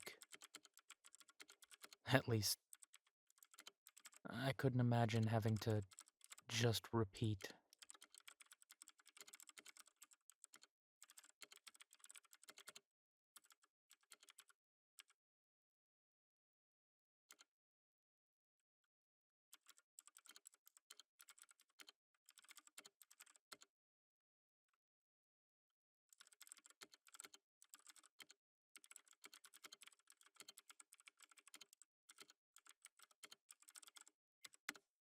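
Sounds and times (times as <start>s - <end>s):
soft keyboard typing: 0.0s - 12.8s, 13.4s - 15.2s, 19.5s - 23.7s, 26.1s - 35.0s.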